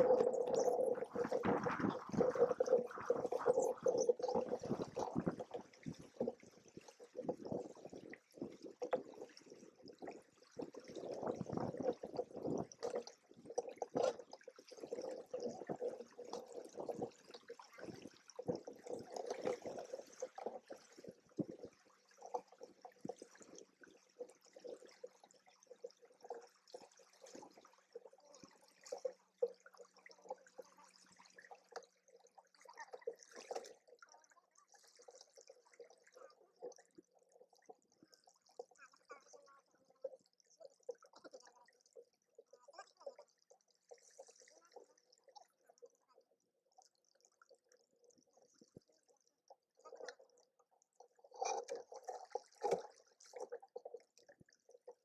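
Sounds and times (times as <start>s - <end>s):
water splashing against hulls: 0.0s - 24.7s.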